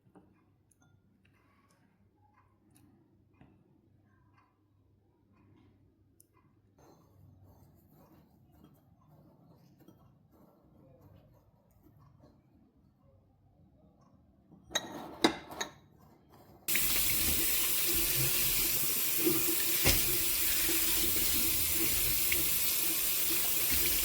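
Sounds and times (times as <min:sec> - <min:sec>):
water running into a sink: 0:16.7 - 0:24.0.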